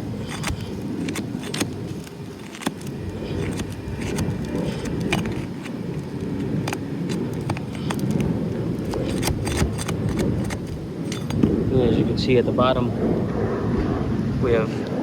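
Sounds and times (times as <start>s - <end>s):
tool clicking and scraping under shingle: 0.0s - 11.6s
low rumble: 2.9s - 15.0s.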